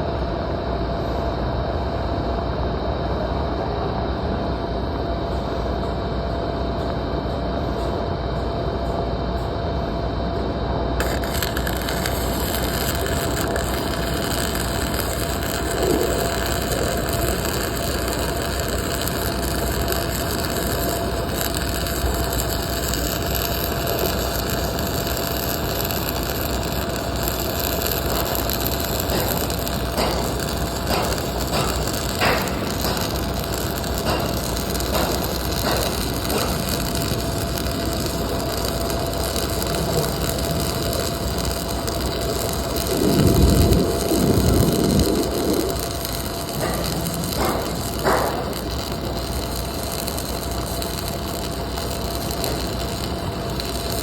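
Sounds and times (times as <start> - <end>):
sharp pops and clicks: 11.0 - 54.0
welding arc crackling hiss: 11.0 - 54.0.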